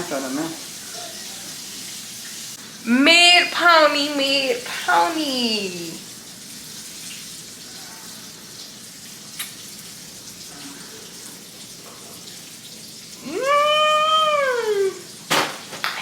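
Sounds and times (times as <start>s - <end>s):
long rising and falling vocal call: 13.2s - 15.1s.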